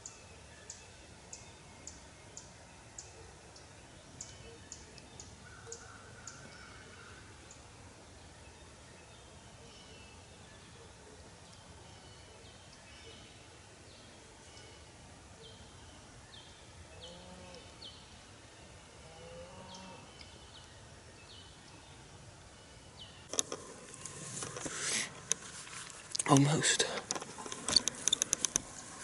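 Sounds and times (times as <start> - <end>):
small birds chirping: 0.0 - 29.0
rustling handling noise: 23.3 - 29.0.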